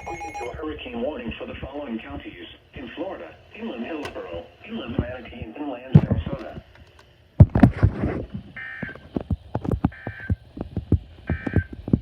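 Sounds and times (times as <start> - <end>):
buzzy alert data tones: 0.0 - 0.6.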